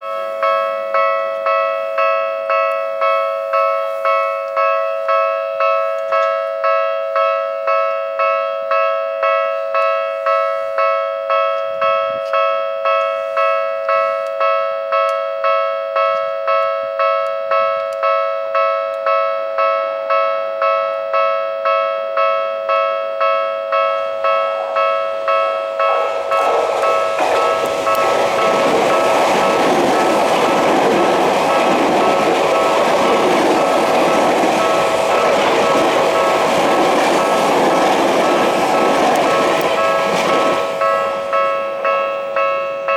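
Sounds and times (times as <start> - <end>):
level-crossing two-tone bell: 0.0 - 42.9
approaching train noise: 23.2 - 42.4.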